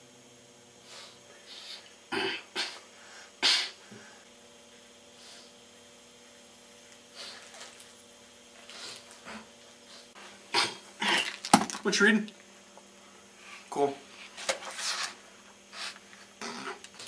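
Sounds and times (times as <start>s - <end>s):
person sneezing: 1.0s - 3.8s, 10.5s - 11.4s.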